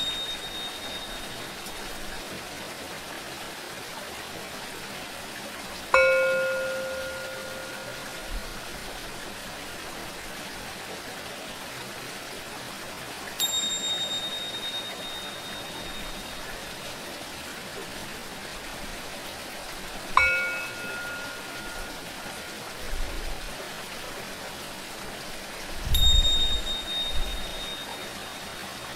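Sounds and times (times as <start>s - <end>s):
singing bowl struck: 0.0s - 1.9s, 5.9s - 9.0s, 13.4s - 16.7s, 20.2s - 22.6s, 25.9s - 28.4s
cymbal high ring: 0.0s - 2.0s, 6.0s - 8.9s, 13.4s - 16.8s, 20.2s - 22.4s, 25.9s - 28.6s
running water: 0.0s - 28.9s.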